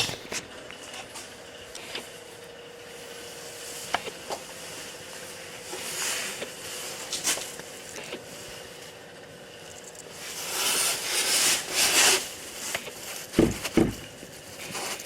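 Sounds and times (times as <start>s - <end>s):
steady hiss and hum: 0.0s - 15.0s
fluid reservoir knocking: 13.4s - 14.1s.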